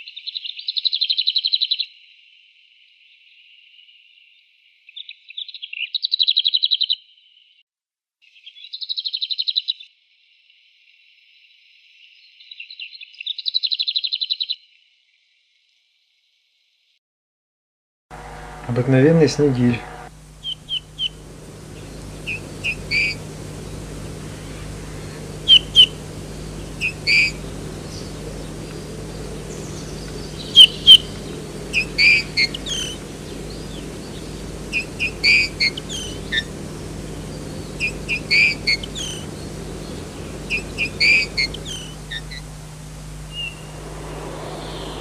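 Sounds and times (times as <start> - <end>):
bullfinch soft whistled calls: 19.7 - 43.8.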